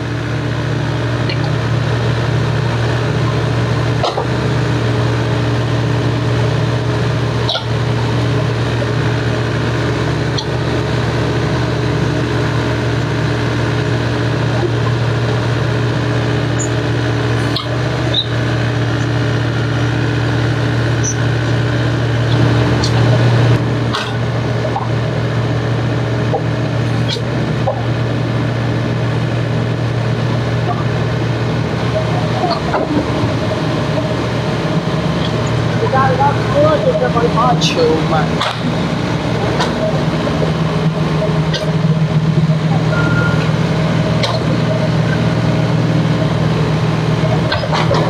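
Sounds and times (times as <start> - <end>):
heavy diesel engine running: 0.0 - 48.0
machinery knocks and clanks: 16.5 - 48.0.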